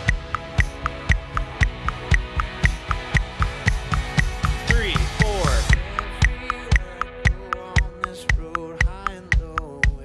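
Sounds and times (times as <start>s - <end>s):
metronome click track: 0.0s - 5.8s, 6.5s - 10.0s
sustained band chords: 0.0s - 9.6s.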